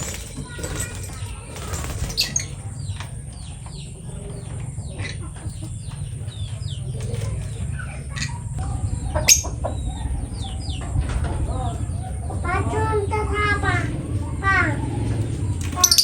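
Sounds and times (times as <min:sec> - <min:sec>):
steady low hum: 0:00.0 - 0:15.9
lovebird chirping: 0:07.7 - 0:11.1.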